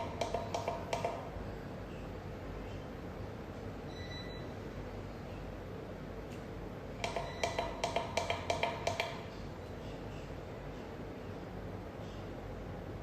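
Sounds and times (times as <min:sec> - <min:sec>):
steady low hum: 0:00.0 - 0:13.0
faint short beep: 0:03.9 - 0:04.5.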